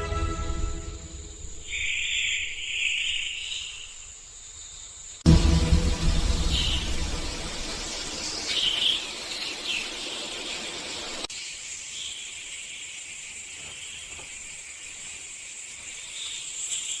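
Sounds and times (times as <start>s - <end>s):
high insect drone: 0.0s - 17.0s
low background ambience: 5.3s - 11.3s.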